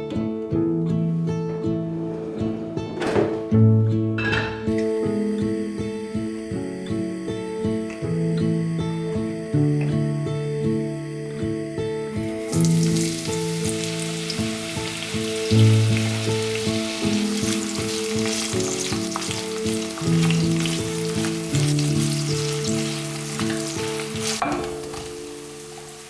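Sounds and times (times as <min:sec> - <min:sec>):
food sizzling in a pan: 0:12.4 - 0:26.0.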